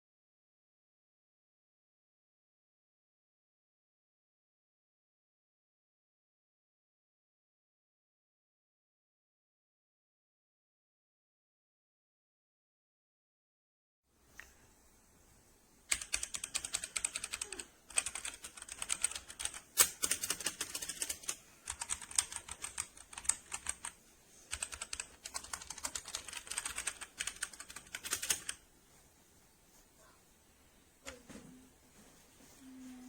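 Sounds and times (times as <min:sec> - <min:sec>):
fast typing on a keyboard: 0:15.9 - 0:28.6.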